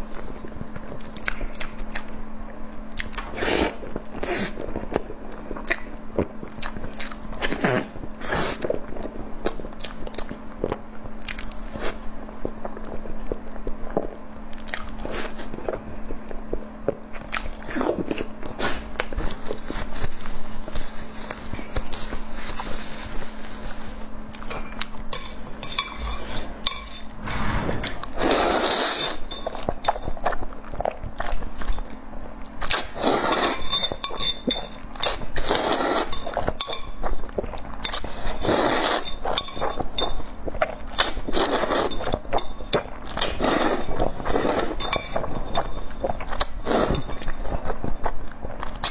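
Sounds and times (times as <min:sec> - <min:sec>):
chewing and mouth noises: 0:00.0 - 0:48.9
utensils clinking on dish: 0:25.1 - 0:27.1, 0:33.3 - 0:34.8, 0:36.0 - 0:37.0, 0:37.9 - 0:40.3, 0:44.7 - 0:45.8.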